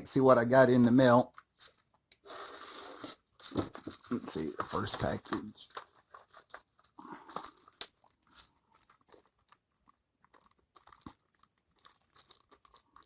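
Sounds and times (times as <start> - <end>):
package crinkling and tearing: 1.3 - 13.0.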